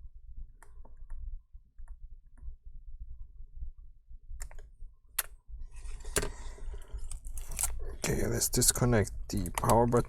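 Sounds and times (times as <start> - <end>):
plastic parts clicking: 9.4 - 9.9.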